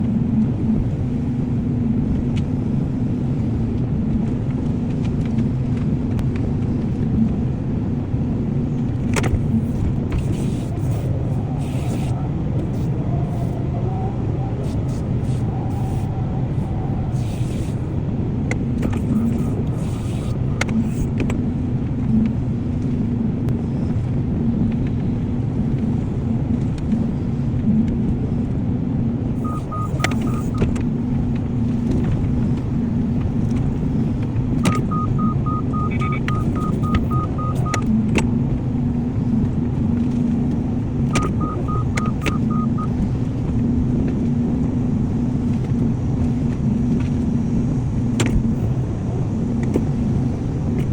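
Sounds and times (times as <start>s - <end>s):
warning beeper: 29.4s - 30.6s, 34.7s - 37.9s, 41.1s - 43.0s
excavator diesel engine running: 29.4s - 48.2s.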